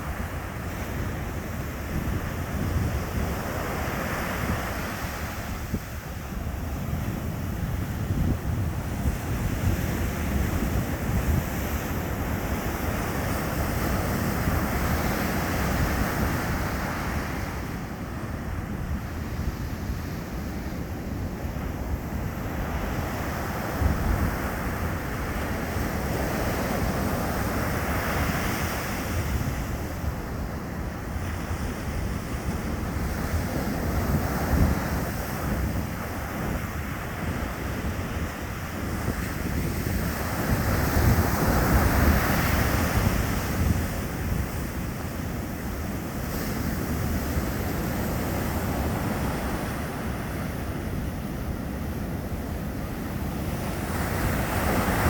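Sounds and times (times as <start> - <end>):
wind buffeting microphone: 0.0 - 55.0
ocean surf breaking: 20.6 - 55.0.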